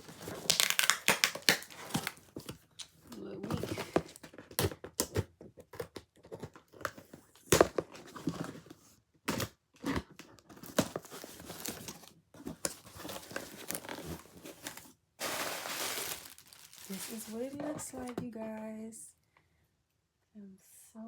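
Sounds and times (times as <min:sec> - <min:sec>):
packaging tearing and crinkling: 0:00.0 - 0:02.5, 0:10.6 - 0:17.6.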